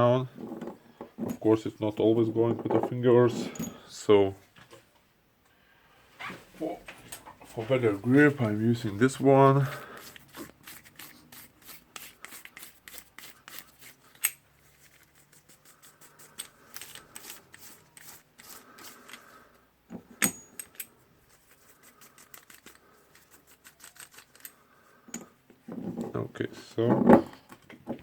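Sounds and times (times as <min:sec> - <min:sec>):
small metal clicks and scrapes: 0:11.9 - 0:19.3, 0:20.2 - 0:25.3.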